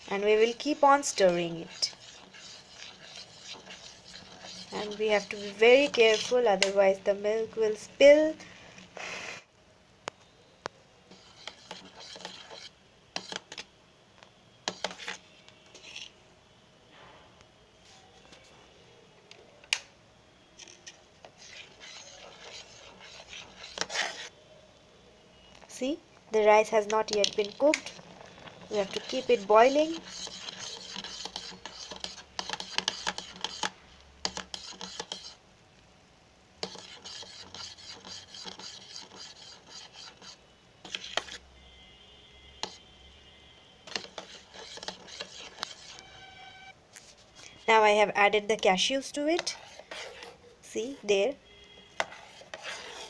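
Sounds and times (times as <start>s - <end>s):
spoon scraping kettle: 0.2s - 6.4s, 21.2s - 24.3s, 27.1s - 35.4s, 43.9s - 46.4s.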